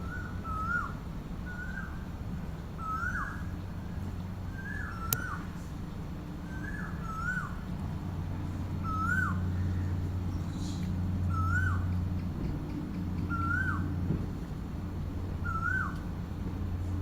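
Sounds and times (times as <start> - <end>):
bird whistled call: 0.0 - 2.0, 2.8 - 3.5, 4.5 - 5.5, 6.4 - 7.6, 8.8 - 11.9, 13.2 - 13.9, 15.4 - 16.0
steady low rumble: 0.0 - 17.0.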